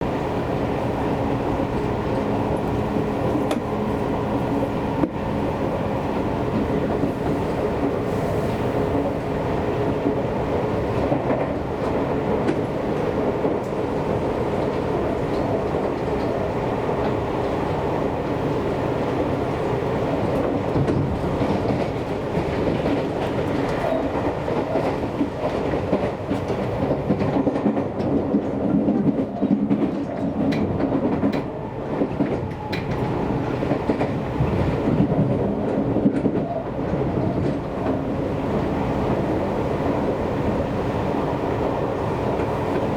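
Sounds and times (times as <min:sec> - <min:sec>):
train rumble and motor hum: 0:00.0 - 0:42.9
wheels clicking over rail joints: 0:20.3 - 0:38.1.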